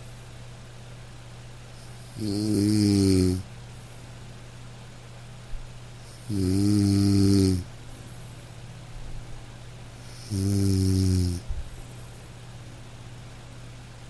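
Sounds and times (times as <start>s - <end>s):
dog snoring: 1.8s - 3.5s, 6.0s - 7.7s, 10.0s - 11.5s.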